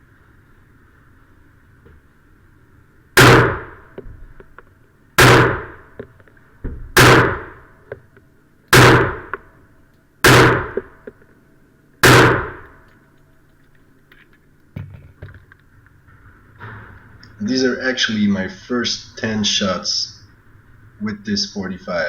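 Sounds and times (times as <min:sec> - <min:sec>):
pistol shots: 0:03.2 - 0:04.0, 0:05.2 - 0:06.0, 0:07.0 - 0:07.8, 0:08.7 - 0:09.5, 0:10.2 - 0:11.0, 0:12.0 - 0:12.8.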